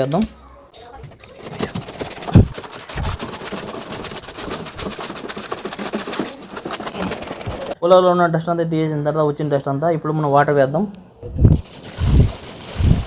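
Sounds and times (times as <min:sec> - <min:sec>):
scraping and brushing in water tank: 0:01.0 - 0:07.8, 0:11.6 - 0:13.0.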